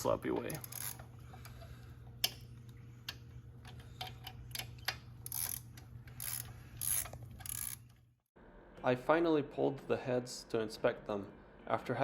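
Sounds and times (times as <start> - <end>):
steady low hum: 0.0 - 9.2.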